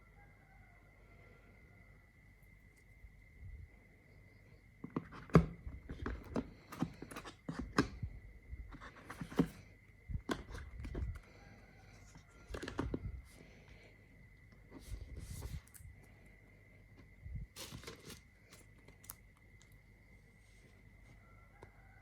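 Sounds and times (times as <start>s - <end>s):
faint high-pitched whine: 0.0s - 22.0s
packaging rustling: 17.6s - 19.1s.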